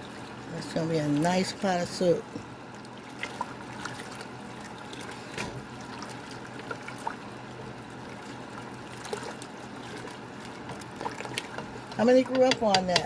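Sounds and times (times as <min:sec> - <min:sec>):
soup bubbling in a pot: 0:02.5 - 0:12.8.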